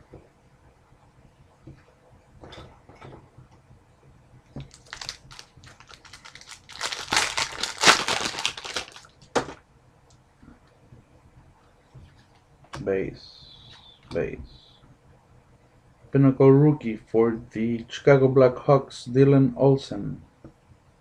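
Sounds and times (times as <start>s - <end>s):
sharp wrapper crackle: 4.6s - 9.3s
wrapper crinkling and tearing: 4.6s - 9.5s.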